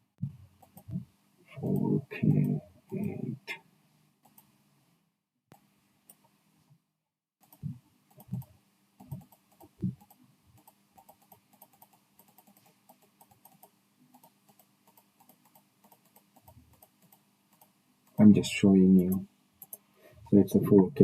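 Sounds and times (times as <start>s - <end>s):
mouse and keyboard clicking: 7.4s - 17.7s, 19.0s - 19.8s.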